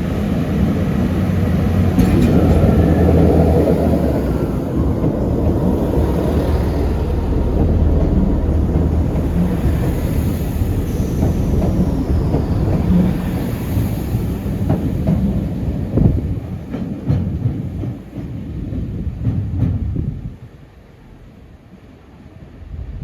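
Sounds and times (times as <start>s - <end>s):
train low rumble: 0.0s - 23.0s
wheels clicking over rail joints: 0.2s - 19.9s.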